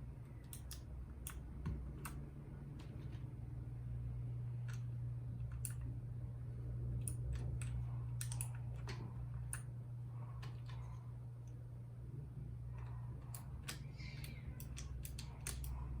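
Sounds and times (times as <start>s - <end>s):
steady low hum: 0.0s - 16.0s
mechanical keyboard keys clicking: 7.0s - 9.7s.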